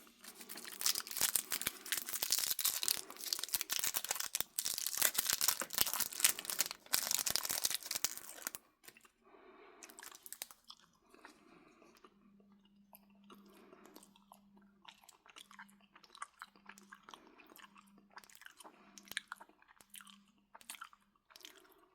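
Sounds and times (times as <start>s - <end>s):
wet mouth clicks and smacks: 19.0s - 21.7s.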